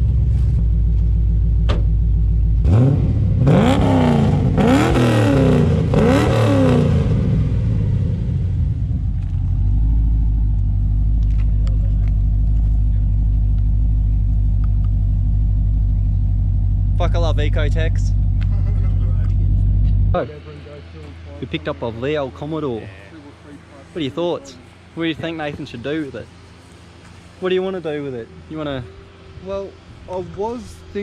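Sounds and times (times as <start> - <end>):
car engine idling and revving: 0.0 - 31.0.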